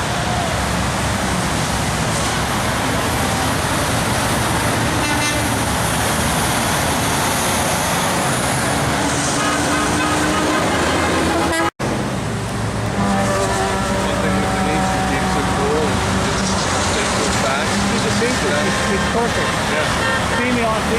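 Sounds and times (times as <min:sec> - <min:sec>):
road traffic passing: 0:00.0 - 0:20.9
car horn beep: 0:09.3 - 0:11.7, 0:18.6 - 0:20.9.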